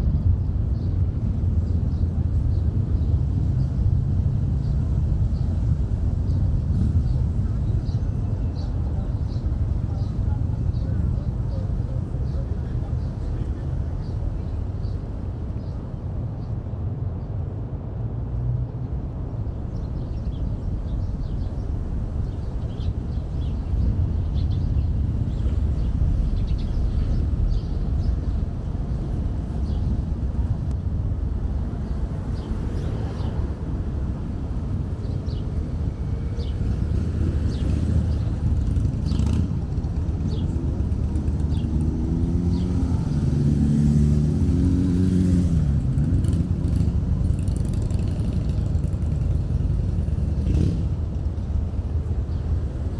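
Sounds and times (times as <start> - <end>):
steady low rumble: 0.0 - 41.8.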